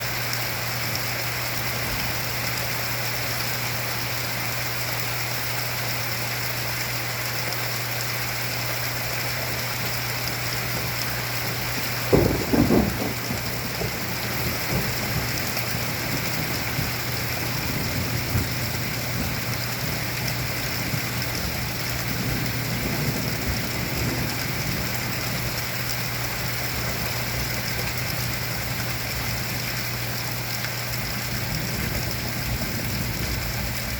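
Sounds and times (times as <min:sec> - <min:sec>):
heavy rain falling: 0:00.0 - 0:33.9
thunder: 0:11.7 - 0:25.5, 0:31.3 - 0:33.9.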